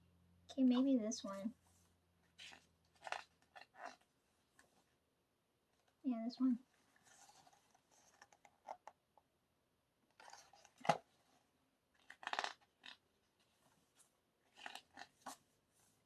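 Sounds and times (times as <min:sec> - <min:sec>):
paper rustling: 0:01.7 - 0:04.9, 0:12.0 - 0:16.0.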